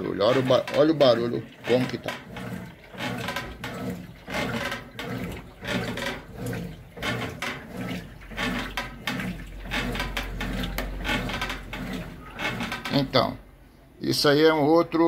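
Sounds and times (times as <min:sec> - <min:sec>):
metal creaking: 0:00.0 - 0:13.5
washing machine sloshing: 0:00.0 - 0:15.0.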